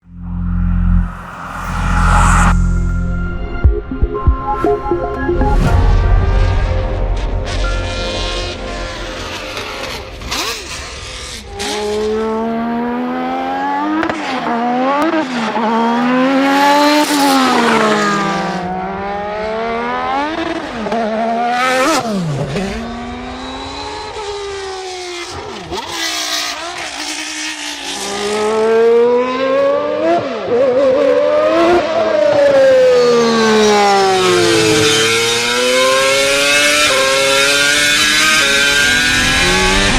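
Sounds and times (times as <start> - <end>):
racing car passing: 6.3 - 20.8
racing car engines revving: 7.6 - 39.9.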